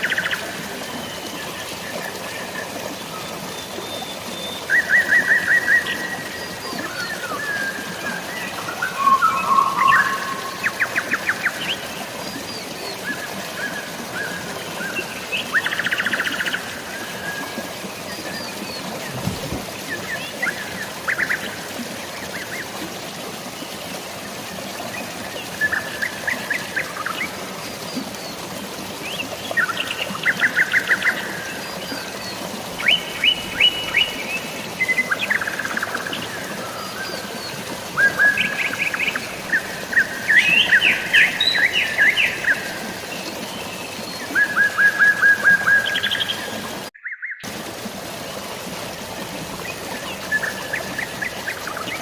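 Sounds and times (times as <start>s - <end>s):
flowing water: 0.0s - 52.0s
rain: 0.0s - 52.0s
birds chirping trills: 8.6s - 13.0s.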